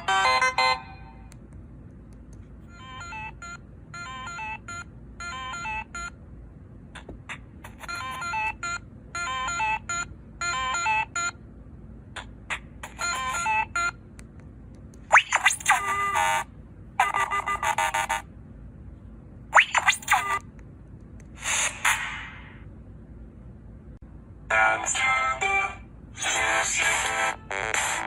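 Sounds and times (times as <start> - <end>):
phone ringtone melody: 2.7 - 6.1.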